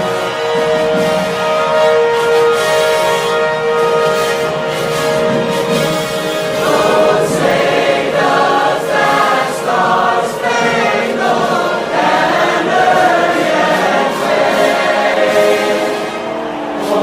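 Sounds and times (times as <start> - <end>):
choir singing: 4.8 - 17.0.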